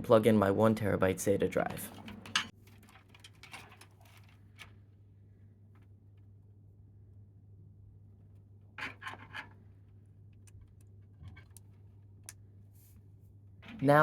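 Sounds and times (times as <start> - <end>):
cables rustling: 1.0 - 6.5, 8.2 - 14.0.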